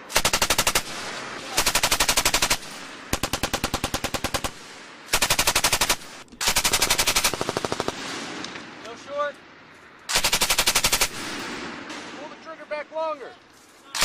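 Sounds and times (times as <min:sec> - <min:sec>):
machine gun firing bursts: 0:00.0 - 0:08.2, 0:10.1 - 0:11.5
gunfire echo: 0:00.0 - 0:09.0, 0:10.1 - 0:12.5.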